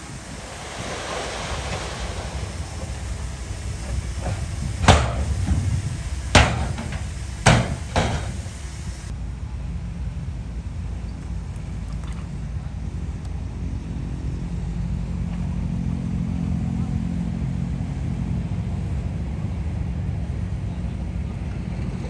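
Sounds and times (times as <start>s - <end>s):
bulldozer engine rumble: 0.0s - 9.1s
loud metal clanks: 1.8s - 9.1s.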